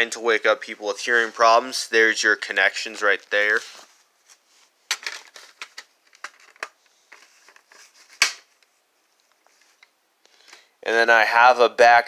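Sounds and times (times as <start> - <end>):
plastic handling rustling and clicks: 2.9 - 10.6.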